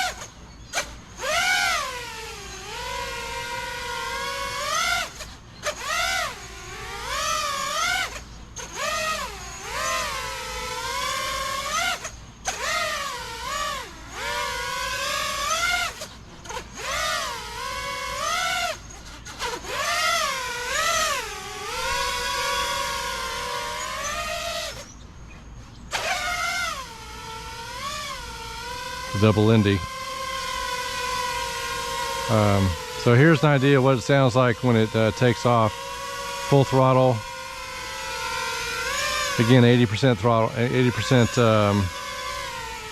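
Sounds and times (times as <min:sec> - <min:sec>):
drone motors whining: 0:00.0 - 0:42.9.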